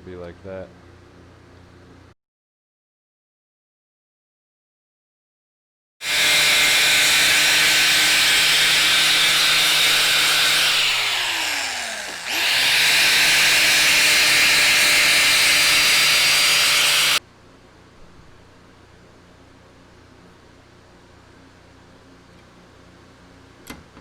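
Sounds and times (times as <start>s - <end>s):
power tool motor whine: 6.0s - 17.2s.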